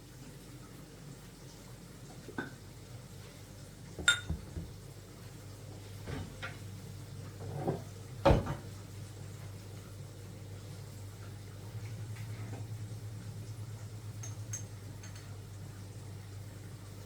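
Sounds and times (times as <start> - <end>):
low steady hum: 0.0 - 17.0
crockery clinking: 4.0 - 4.5
cupboard thump: 8.2 - 8.7.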